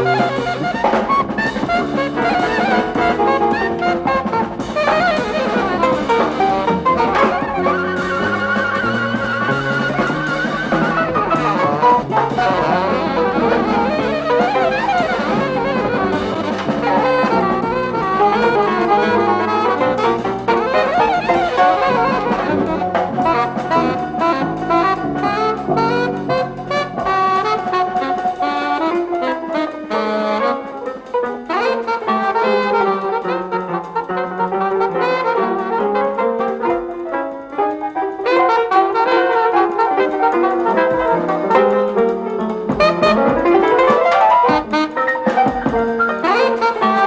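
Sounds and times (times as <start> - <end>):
bass line: 0.0 - 28.8
jazzy brass and saxophone music: 0.0 - 47.0.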